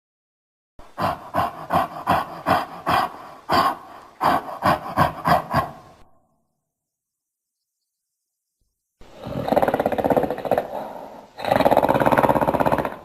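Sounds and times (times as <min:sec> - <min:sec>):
creature rasping grunts: 0:00.9 - 0:06.0.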